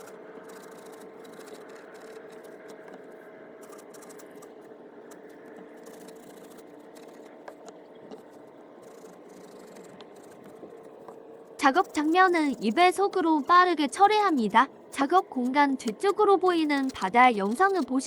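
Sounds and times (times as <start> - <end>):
hand saw rasping: 0.0 - 3.0, 11.6 - 18.0
steady low hum: 0.0 - 18.0.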